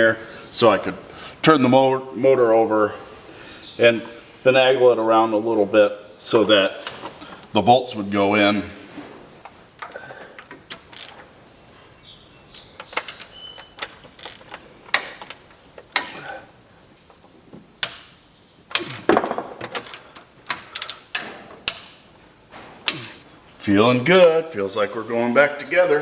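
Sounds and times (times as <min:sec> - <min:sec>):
loud knocks: 0:18.8 - 0:19.7
metallic clicks of hand tools: 0:19.7 - 0:22.0, 0:22.9 - 0:23.2.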